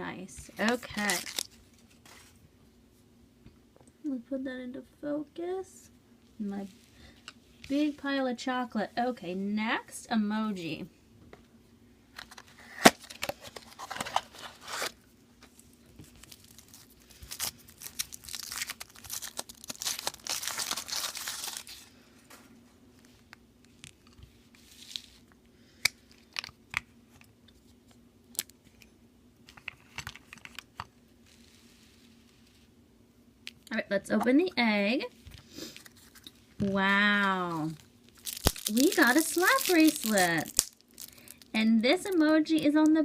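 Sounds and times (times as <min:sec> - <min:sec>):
wrapper crinkling: 0:00.6 - 0:02.0, 0:16.0 - 0:21.9, 0:35.7 - 0:42.2.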